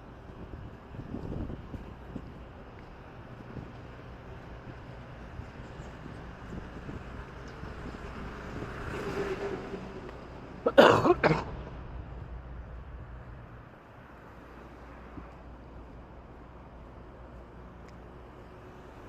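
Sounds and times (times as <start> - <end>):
traffic hum: 0.0 - 19.0
vehicle passing: 6.8 - 14.6
person coughing: 10.7 - 11.6.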